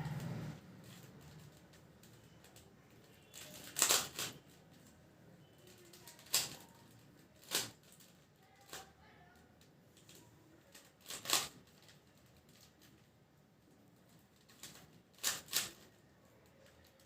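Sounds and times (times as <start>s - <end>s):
puzzle cube clicking rattle: 0.8s - 2.7s, 3.3s - 4.9s, 5.7s - 8.8s, 10.7s - 13.0s, 14.1s - 16.0s.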